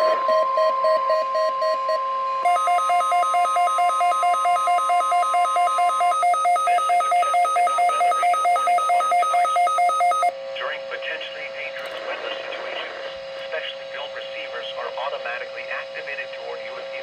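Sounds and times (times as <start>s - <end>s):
fast pulsing beep: 0.0s - 10.3s
steady low alarm tone: 0.0s - 10.3s
higher steady tone: 2.3s - 10.3s.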